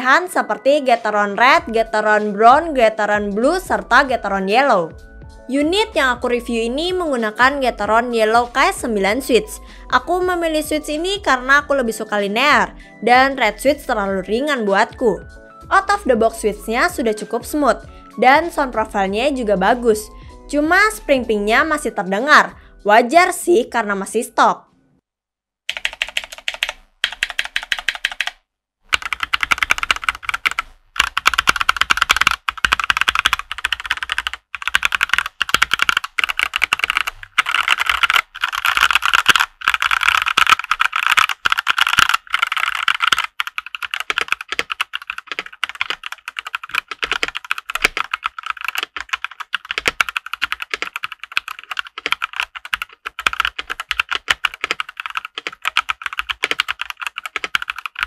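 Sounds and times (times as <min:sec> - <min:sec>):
mechanical keyboard typing: 0:25.7 - 0:58.0.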